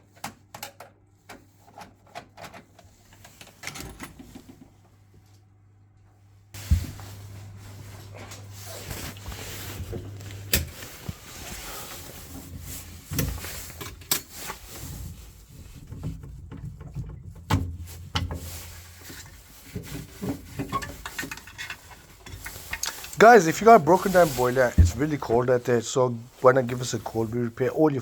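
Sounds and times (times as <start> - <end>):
low steady hum: 3.4 - 28.0
tools and metal parts rattling: 20.4 - 23.2.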